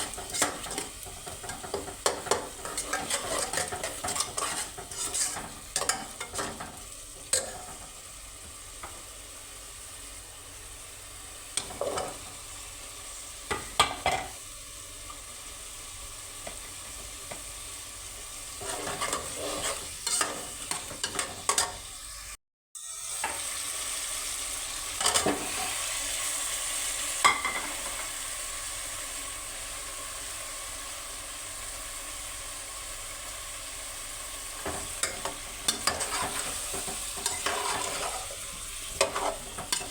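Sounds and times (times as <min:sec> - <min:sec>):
spatula scraping a pan: 0:00.0 - 0:08.0, 0:11.6 - 0:12.3, 0:18.5 - 0:21.9, 0:25.0 - 0:25.8, 0:34.6 - 0:39.9
vegetables sizzling in a pan: 0:00.0 - 0:39.9.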